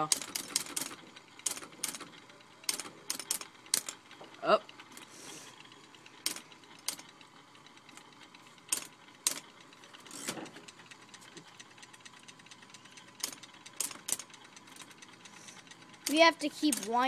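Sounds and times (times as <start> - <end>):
typewriter clunk: 0.0 - 2.1, 2.7 - 4.0, 13.2 - 14.2
electric typewriter key strikes: 0.0 - 4.0, 6.2 - 7.1, 8.7 - 9.4, 13.1 - 15.0, 16.0 - 17.0.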